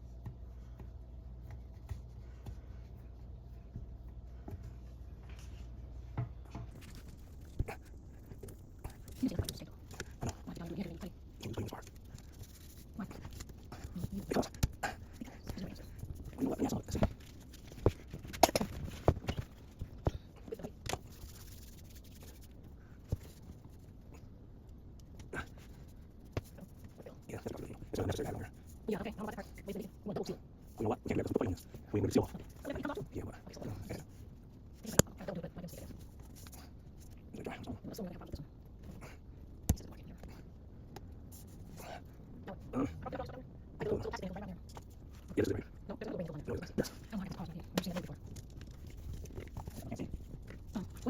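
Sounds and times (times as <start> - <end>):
steady low hum: 0.0 - 51.0.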